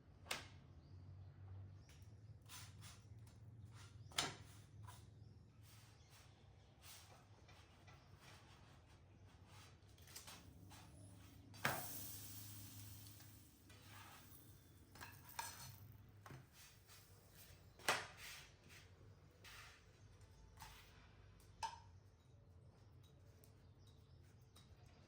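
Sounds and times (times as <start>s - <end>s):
dishes and utensils clinking: 14.9s - 15.9s.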